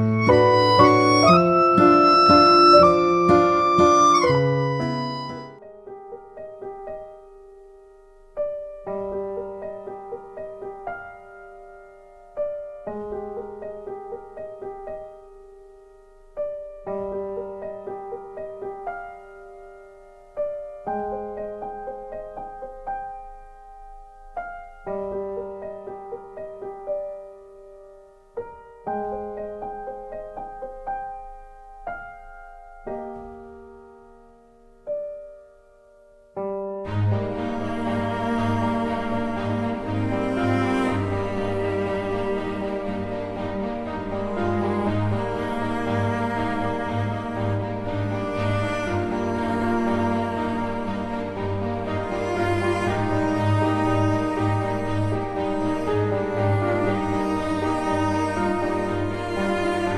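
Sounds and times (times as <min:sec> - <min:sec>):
gentle solo piano piece: 0:00.0 - 0:37.0.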